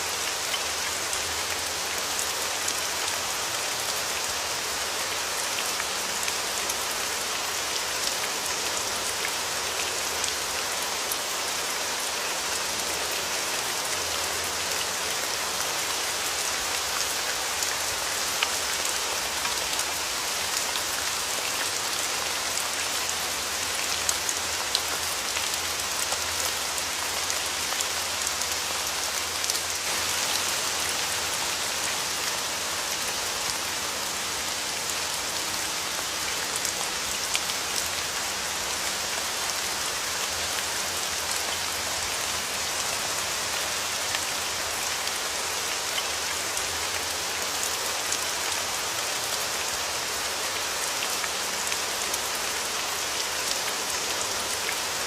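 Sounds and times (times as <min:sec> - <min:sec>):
steady rain with pattering drops: 0:00.0 - 0:55.0.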